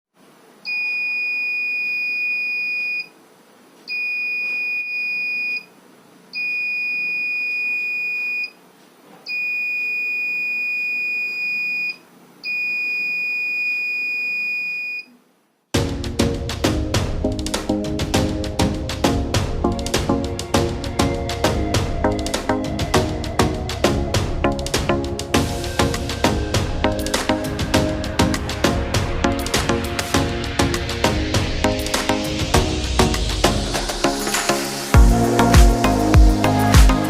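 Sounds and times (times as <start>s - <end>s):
music: 15.8s - 37.0s.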